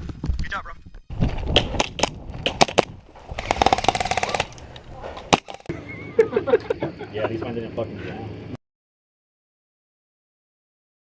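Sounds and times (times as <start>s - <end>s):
airsoft gun firing: 1.5s - 5.7s.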